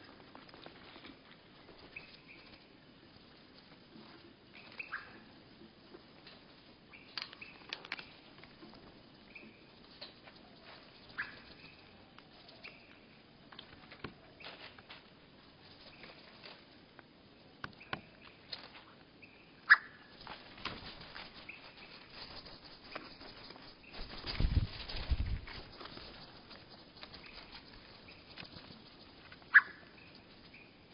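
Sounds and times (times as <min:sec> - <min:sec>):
beaks and feet tapping feeder: 0:19.7 - 0:24.4
slowed bird chirps: 0:26.9 - 0:30.9.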